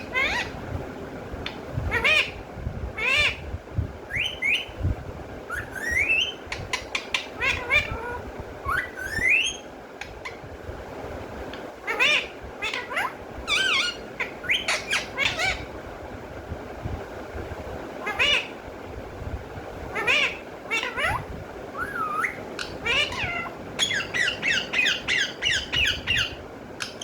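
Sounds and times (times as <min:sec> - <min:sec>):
parrot whistling and squawking: 0:00.0 - 0:00.6, 0:01.9 - 0:02.4, 0:03.0 - 0:03.4, 0:04.1 - 0:04.7, 0:05.5 - 0:09.7, 0:11.9 - 0:15.7, 0:18.0 - 0:18.5, 0:19.9 - 0:27.0.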